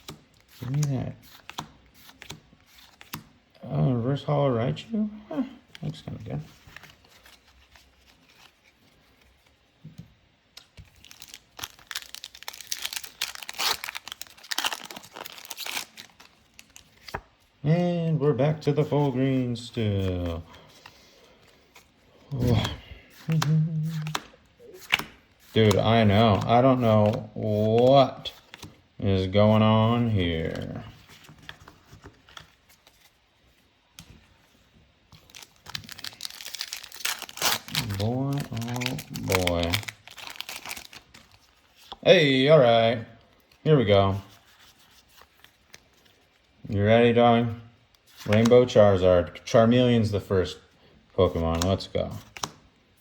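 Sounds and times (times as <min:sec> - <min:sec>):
foil wrapper tearing and crinkling: 0:10.9 - 0:17.1, 0:35.2 - 0:41.6.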